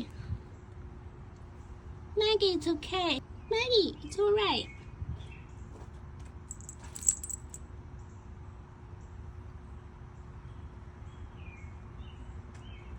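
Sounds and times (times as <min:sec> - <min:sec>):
low steady hum: 0:06.4 - 0:07.6
metal pieces jingling: 0:06.5 - 0:07.6
sharp metal clink: 0:06.5 - 0:07.6.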